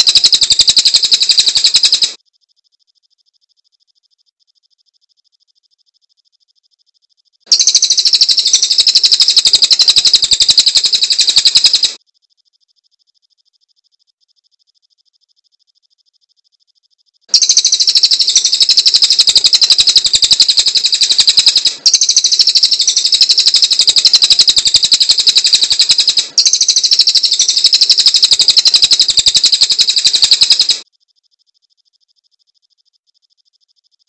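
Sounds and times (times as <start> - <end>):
songbird rapid high trill: 0.0 - 2.2, 7.5 - 12.0, 17.3 - 30.8.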